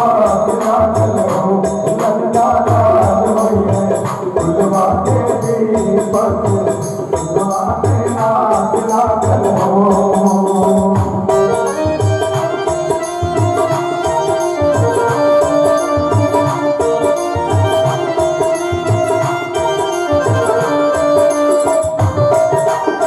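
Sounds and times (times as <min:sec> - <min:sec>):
keyboard melody: 0:00.0 - 0:23.0
tabla beat: 0:00.0 - 0:23.0.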